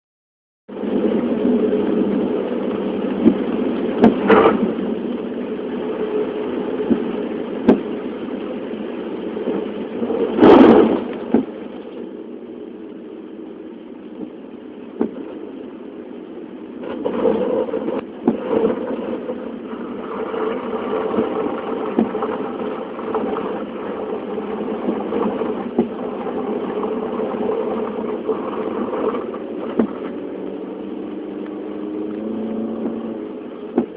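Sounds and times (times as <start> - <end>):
loud burst: 9.9 - 11.7.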